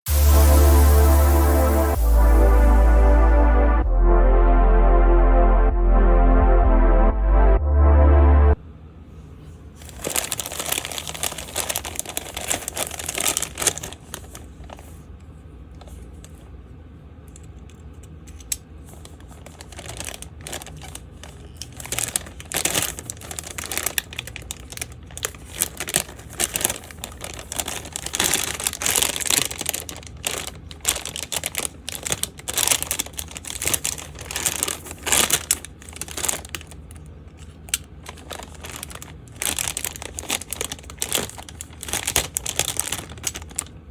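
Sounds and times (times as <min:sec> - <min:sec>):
packaging crinkling: 0:09.8 - 0:15.0, 0:18.3 - 0:43.8.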